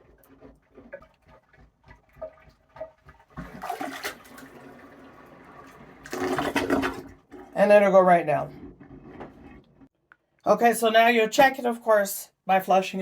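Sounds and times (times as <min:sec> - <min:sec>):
water rushing down toilet drain: 0:00.0 - 0:09.9.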